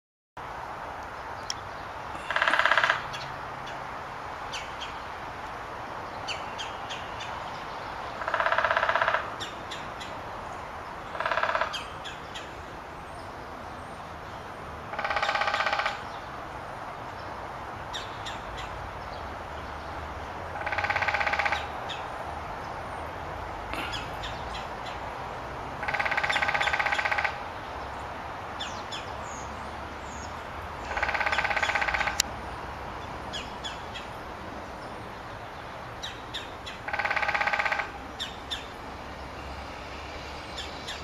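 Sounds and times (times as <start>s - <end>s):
woodpecker drumming on wood: 2.2s - 3.1s, 8.2s - 9.3s, 11.1s - 11.8s, 14.9s - 16.0s, 20.6s - 21.7s, 25.8s - 27.4s, 30.9s - 32.3s, 36.8s - 38.0s.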